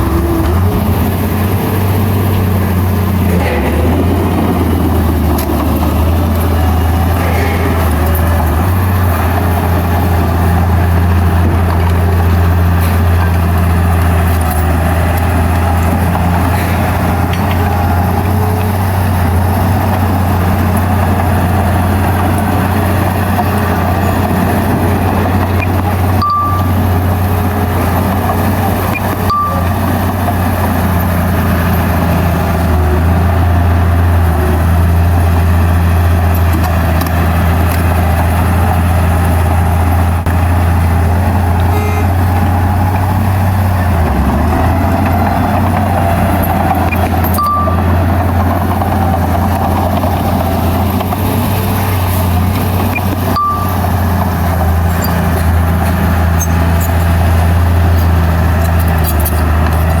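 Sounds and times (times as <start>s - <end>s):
heavy diesel engine drone: 0.0s - 60.0s
short high beep: 26.2s - 26.8s, 29.3s - 29.8s, 41.7s - 42.2s, 47.3s - 47.9s, 53.4s - 54.0s.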